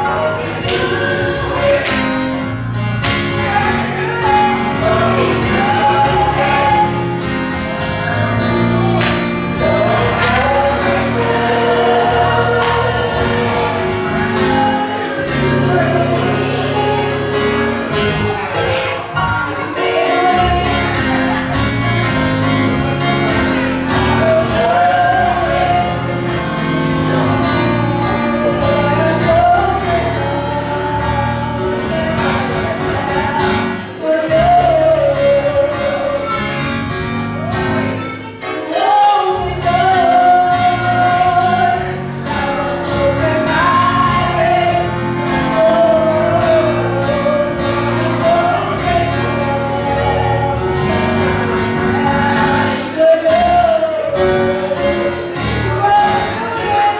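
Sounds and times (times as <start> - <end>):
gospel choir singing: 0.0 - 56.9
instrumental accompaniment: 0.0 - 56.9.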